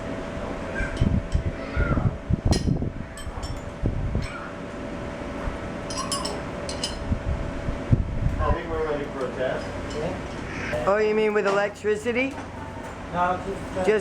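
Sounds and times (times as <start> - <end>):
steady low hum: 0.0 - 14.0
metallic clinks and knocks: 2.6 - 4.4, 5.9 - 7.1.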